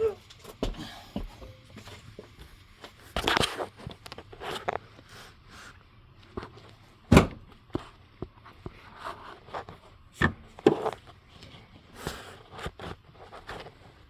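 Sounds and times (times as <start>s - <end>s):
knocks and clunks of handling things: 6.3s - 14.0s.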